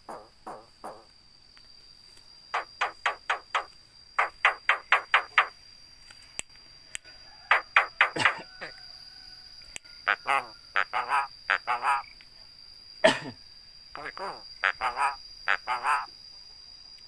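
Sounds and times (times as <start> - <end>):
myna harsh calls: 10.1 - 12.0, 14.0 - 16.1.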